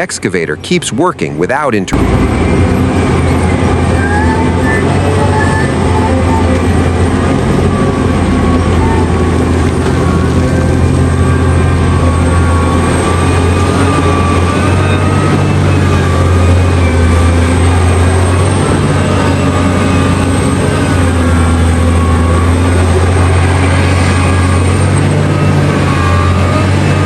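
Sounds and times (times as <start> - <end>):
faint high whining: 0.0 - 27.0
heavy diesel engines droning: 0.0 - 27.0.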